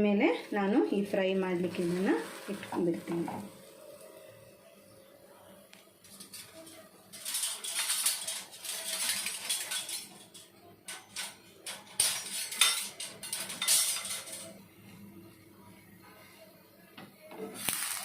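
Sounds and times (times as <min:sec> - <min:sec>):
metal spatula scraping a frying pan: 0:01.6 - 0:03.0, 0:06.1 - 0:14.6.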